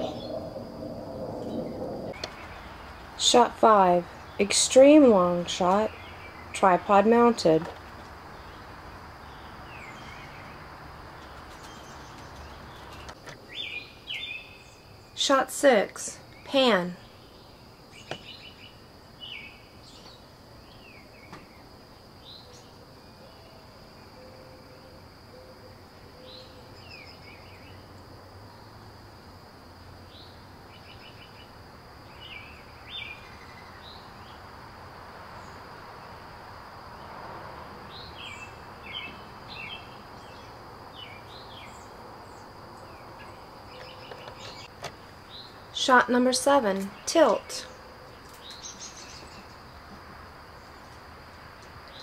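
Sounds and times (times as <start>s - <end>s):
birds chirping: 0.0s - 15.7s, 37.9s - 49.9s.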